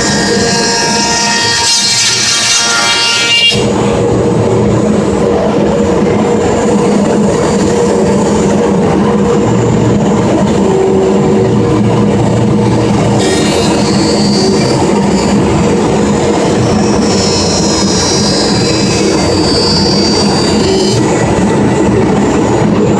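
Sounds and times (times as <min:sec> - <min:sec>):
high whine: 0:12.9 - 0:21.3.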